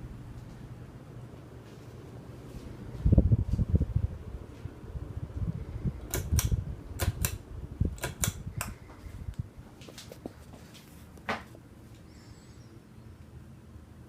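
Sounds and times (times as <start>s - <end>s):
ceiling fan running: 0.0s - 14.0s
sharp clicks and knocks: 6.0s - 8.8s.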